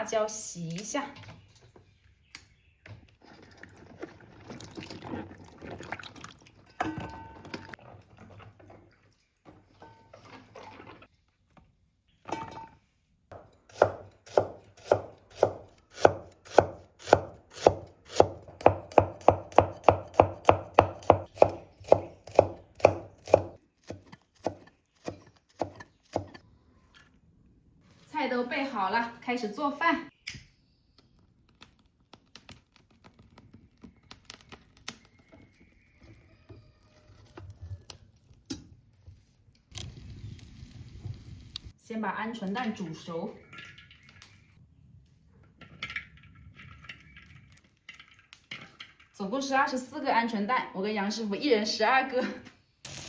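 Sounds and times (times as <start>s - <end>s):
handling and rinsing noises: 2.8s - 13.3s.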